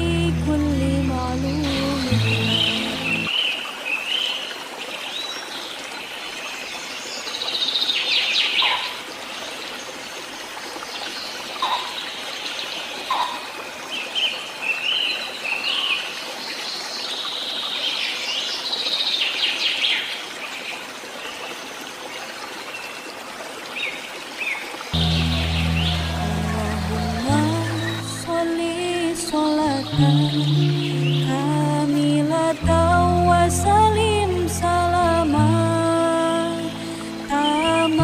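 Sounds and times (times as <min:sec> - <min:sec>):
running water hiss: 0:00.0 - 0:38.0
birds chirping and trilling: 0:01.0 - 0:04.4, 0:06.8 - 0:09.1, 0:11.2 - 0:16.1, 0:23.8 - 0:31.6, 0:36.6 - 0:38.0.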